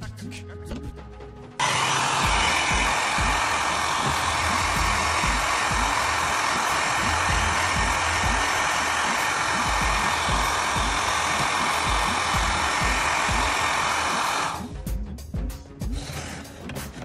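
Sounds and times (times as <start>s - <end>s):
hot-air blower rushing: 1.6s - 14.8s.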